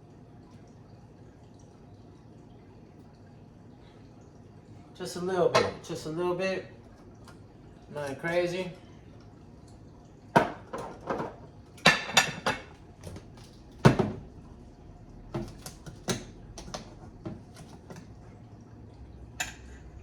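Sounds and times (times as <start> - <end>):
kitchen utensils clinking: 5.5 - 5.9, 10.4 - 12.7.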